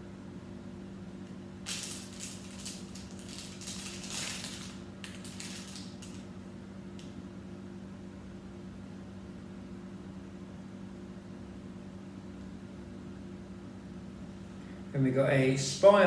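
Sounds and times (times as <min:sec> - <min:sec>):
steady low hum: 0:00.0 - 0:16.0
plastic pieces clicking and clattering: 0:01.7 - 0:06.2.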